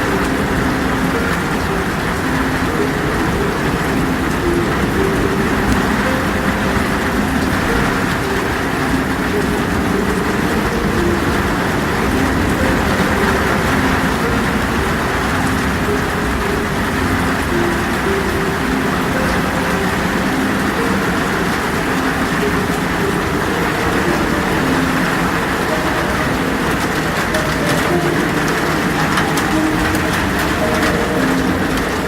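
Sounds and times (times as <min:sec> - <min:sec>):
heavy rain pouring: 0:00.0 - 0:32.0.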